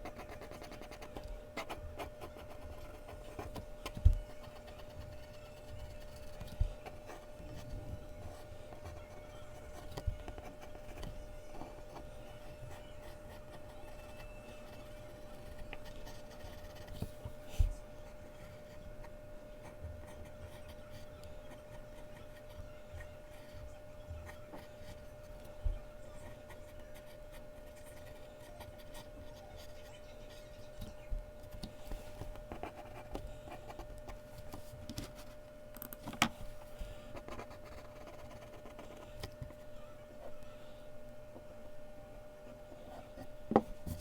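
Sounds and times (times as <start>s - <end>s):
pencil scratching on paper: 0.0s - 17.7s, 31.5s - 35.3s, 36.3s - 39.1s
faint hum: 0.0s - 44.0s.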